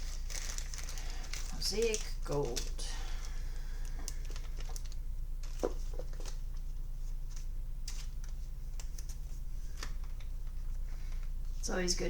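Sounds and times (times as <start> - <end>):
steady low hum: 0.0 - 12.0
cards rustling and tapping: 4.0 - 6.7.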